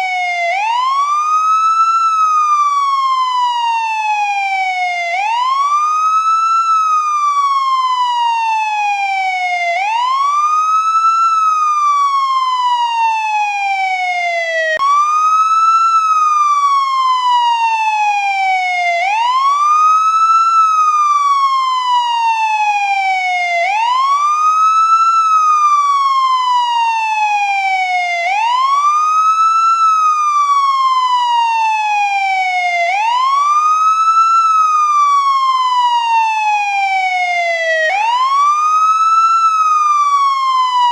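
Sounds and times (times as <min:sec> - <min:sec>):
police siren wailing: 0:00.0 - 0:40.9.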